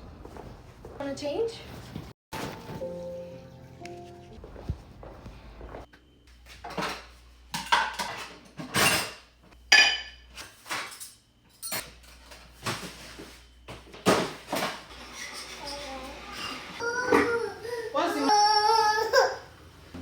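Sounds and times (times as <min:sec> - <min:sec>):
dishes and utensils clinking: 0:06.7 - 0:12.8.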